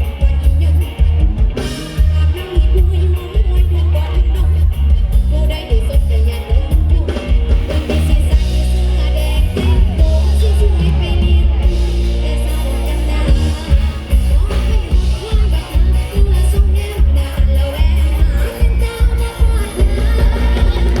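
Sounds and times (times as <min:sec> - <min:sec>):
heavy bass music: 0:00.0 - 0:21.0
person singing: 0:00.0 - 0:21.0.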